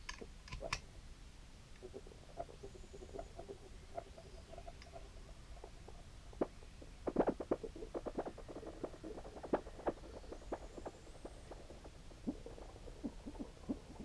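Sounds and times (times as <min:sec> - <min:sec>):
irregular glitchy blips and pops: 0:05.6 - 0:14.0.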